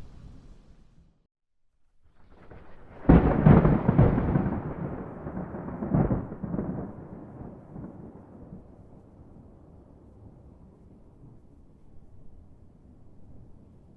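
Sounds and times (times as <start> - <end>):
thunder rumble: 2.0 - 13.9
sharp thunder crack: 2.2 - 8.8.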